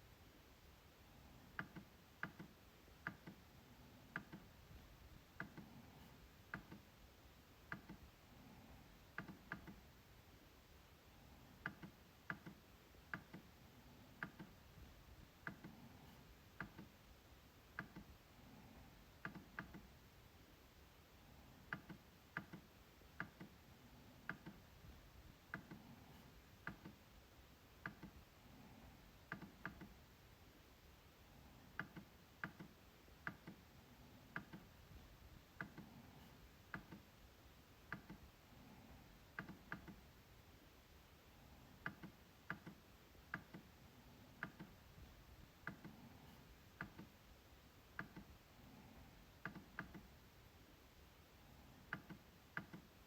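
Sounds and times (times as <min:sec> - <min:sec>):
trackpad clicks: 0:01.6 - 0:03.4, 0:04.1 - 0:04.5, 0:07.7 - 0:08.1, 0:09.1 - 0:09.8, 0:11.6 - 0:13.5, 0:14.2 - 0:14.6, 0:19.2 - 0:19.9, 0:21.7 - 0:23.6, 0:24.2 - 0:24.7, 0:25.5 - 0:27.0, 0:29.3 - 0:30.0, 0:31.7 - 0:33.6, 0:34.3 - 0:34.7, 0:37.9 - 0:38.2, 0:39.4 - 0:40.0, 0:41.8 - 0:43.7, 0:44.4 - 0:44.8, 0:46.8 - 0:47.1, 0:47.9 - 0:48.3, 0:49.4 - 0:50.1, 0:51.9 - 0:52.9.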